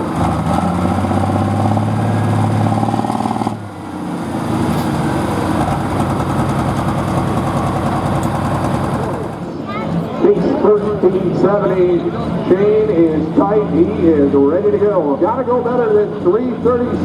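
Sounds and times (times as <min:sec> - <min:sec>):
another engine idling: 0:00.0 - 0:10.0
diesel engine idling: 0:00.0 - 0:17.0.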